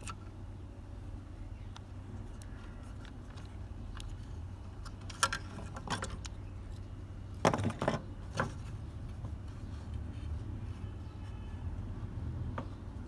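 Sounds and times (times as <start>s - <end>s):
steady low hum: 0.0s - 13.0s
small hard parts clattering: 2.4s - 6.4s, 7.4s - 8.7s.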